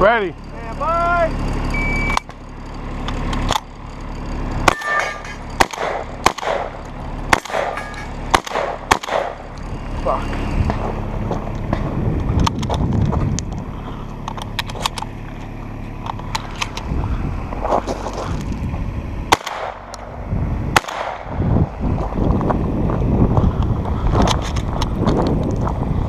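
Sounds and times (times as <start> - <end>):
low engine hum: 0.0 - 26.0
shotgun blasts: 4.6 - 9.5, 19.3 - 19.9, 20.7 - 21.4.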